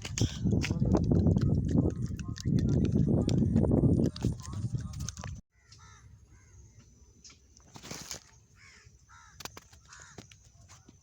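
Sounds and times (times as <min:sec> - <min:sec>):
crows cawing faintly: 0:05.5 - 0:07.0, 0:08.2 - 0:10.4
rustle: 0:07.3 - 0:08.8.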